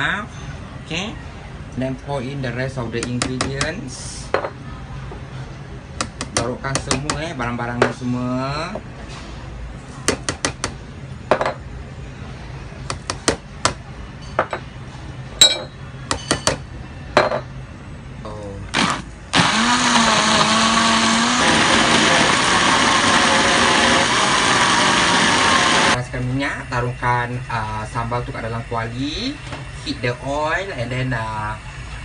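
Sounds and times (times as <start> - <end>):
blender motor grinding: 18.7 - 26.0.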